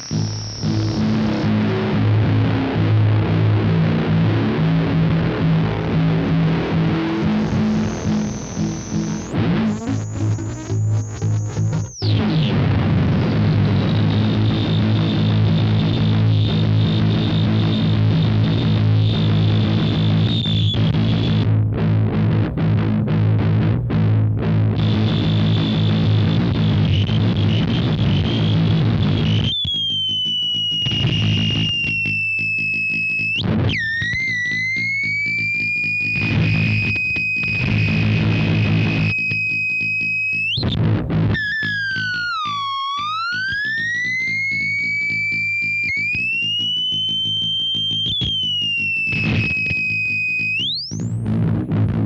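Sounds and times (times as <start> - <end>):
high whistling gliding tone: 0.0 - 1.7, 6.5 - 12.1, 27.5 - 40.8, 41.4 - 51.1
low distorted stuttering buzz: 0.0 - 52.0.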